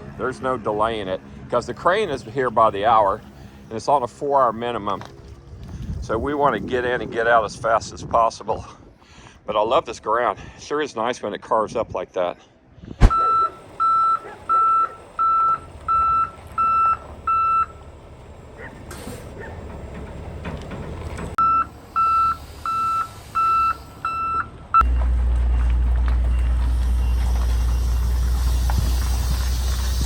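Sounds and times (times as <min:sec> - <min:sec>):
backup alarm beeping: 0:13.0 - 0:18.0, 0:21.4 - 0:25.2
loud low steady rumble: 0:21.7 - 0:30.0.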